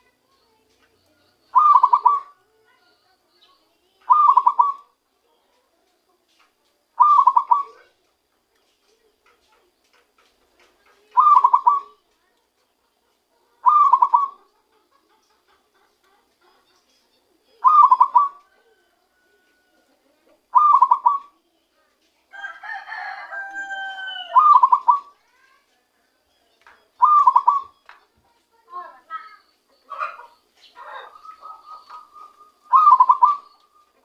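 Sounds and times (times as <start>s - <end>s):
bird call with falling tone: 1.5s - 2.3s, 4.1s - 4.9s, 11.2s - 12.0s, 17.6s - 18.8s, 20.5s - 21.2s, 23.4s - 25.2s, 26.8s - 27.9s, 29.0s - 34.0s
dove cooing: 1.5s - 2.4s, 4.1s - 4.9s, 7.0s - 8.0s, 11.1s - 12.0s, 13.6s - 14.5s, 17.4s - 21.4s, 23.7s - 25.2s, 27.0s - 27.8s, 29.1s - 34.0s.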